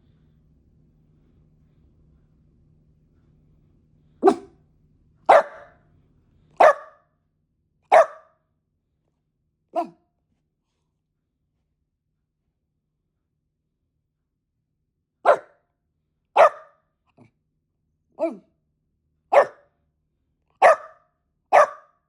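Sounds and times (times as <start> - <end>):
dog barking: 4.2 - 4.6, 5.3 - 5.8, 6.6 - 7.0, 7.9 - 8.4, 9.8 - 10.0, 15.2 - 15.6, 16.4 - 16.8, 19.3 - 19.7, 20.6 - 22.0.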